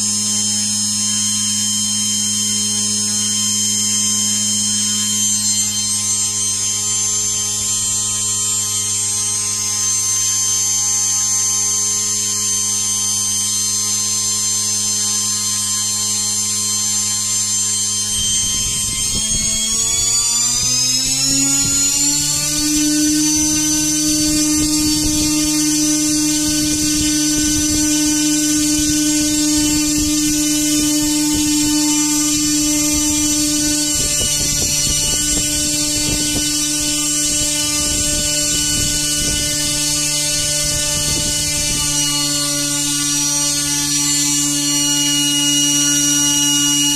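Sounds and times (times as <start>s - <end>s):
electric motor whine: 0.0s - 46.9s.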